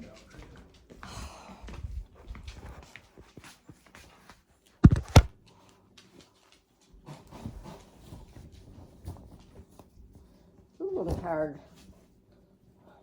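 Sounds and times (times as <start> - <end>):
sharp knocks: 4.8 - 5.3.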